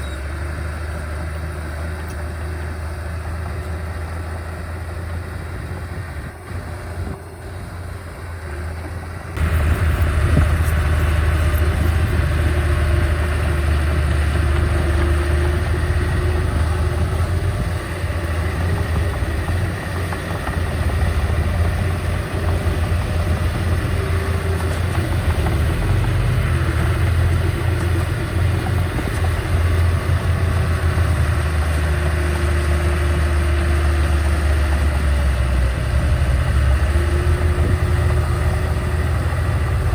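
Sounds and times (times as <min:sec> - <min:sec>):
diesel engine low rumble: 0:00.0 - 0:39.9.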